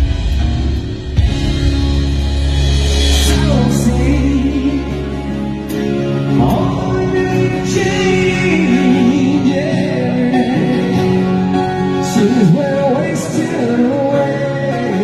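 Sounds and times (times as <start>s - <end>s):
live rock band playing: 0.0s - 15.0s
person singing lead vocal: 3.2s - 15.0s.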